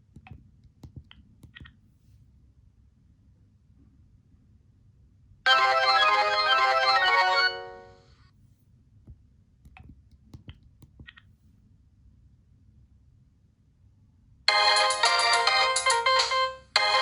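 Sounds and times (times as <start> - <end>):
polyphonic phone ringtone: 5.5 - 8.0, 14.5 - 17.0.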